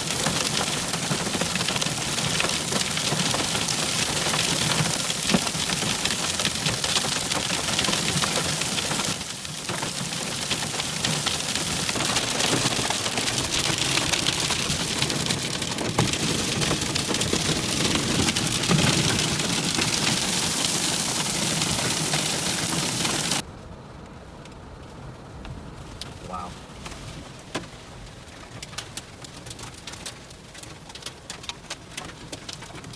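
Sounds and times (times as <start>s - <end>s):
heavy rain pouring: 0.0s - 23.4s.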